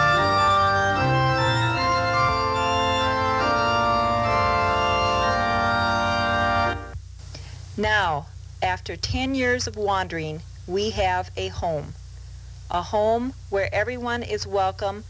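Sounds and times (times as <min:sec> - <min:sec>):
organ chords: 0:00.0 - 0:07.0.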